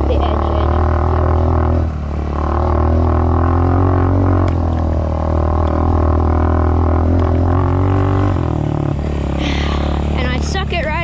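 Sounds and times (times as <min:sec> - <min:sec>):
dirt bike engine droning: 0:00.0 - 0:11.0.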